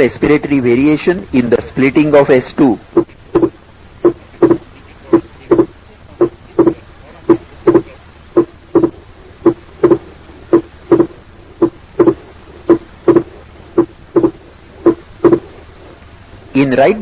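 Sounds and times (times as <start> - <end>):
heartbeat thuds: 2.9 - 16.0.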